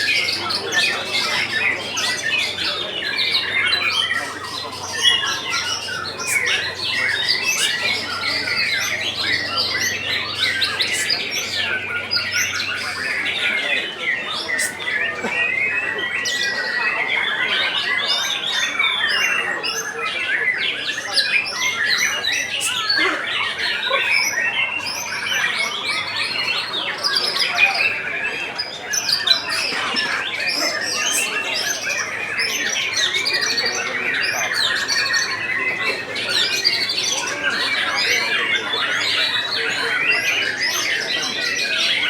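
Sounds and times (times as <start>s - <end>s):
chorus of songbirds whistling: 0.0s - 42.0s.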